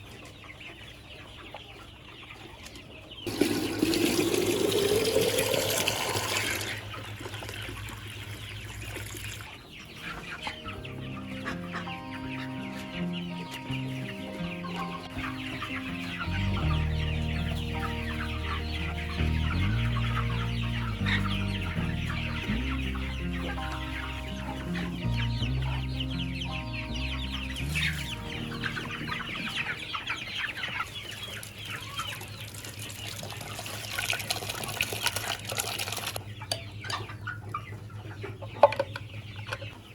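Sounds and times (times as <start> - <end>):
chickens clucking: 0.0 - 39.9
soft background music: 9.6 - 32.1.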